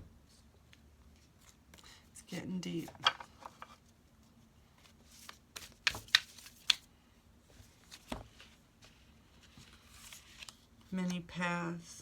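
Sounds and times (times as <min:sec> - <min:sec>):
cards shuffling and snapping: 0:05.1 - 0:06.9.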